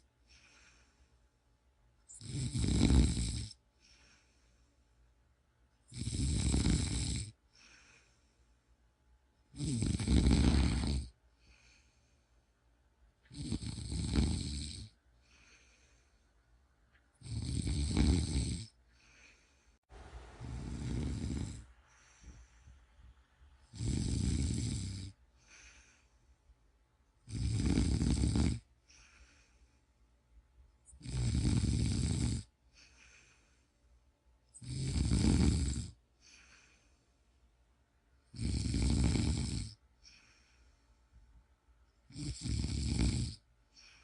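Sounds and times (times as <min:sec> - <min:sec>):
faint breathing: 0:00.0 - 0:02.2, 0:03.6 - 0:05.2, 0:07.4 - 0:08.9, 0:10.4 - 0:12.8, 0:15.1 - 0:17.1, 0:18.6 - 0:26.6, 0:28.6 - 0:30.2, 0:32.5 - 0:34.2, 0:36.1 - 0:37.5, 0:39.9 - 0:41.4, 0:43.6 - 0:44.0
person snoring: 0:02.1 - 0:04.3, 0:05.9 - 0:08.1, 0:09.5 - 0:11.9, 0:13.3 - 0:16.0, 0:17.2 - 0:19.4, 0:20.4 - 0:22.5, 0:23.6 - 0:26.1, 0:27.2 - 0:29.5, 0:30.9 - 0:33.3, 0:34.5 - 0:36.8, 0:38.3 - 0:40.4, 0:42.1 - 0:44.0.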